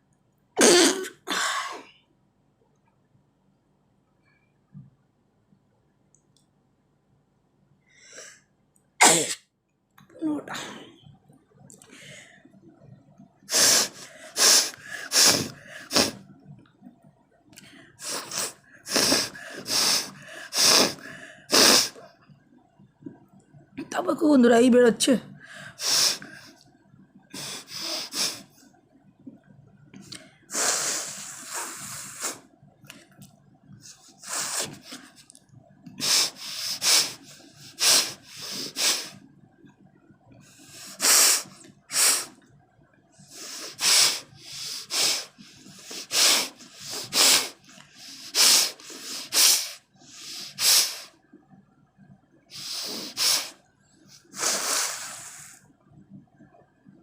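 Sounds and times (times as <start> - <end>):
person blowing nose: 0.6 - 1.1, 13.5 - 16.2, 18.0 - 22.0, 25.8 - 26.2, 27.4 - 28.4, 30.5 - 32.4, 34.2 - 35.0, 36.0 - 39.2, 40.8 - 42.4, 43.4 - 51.1, 52.6 - 53.6, 54.2 - 55.6.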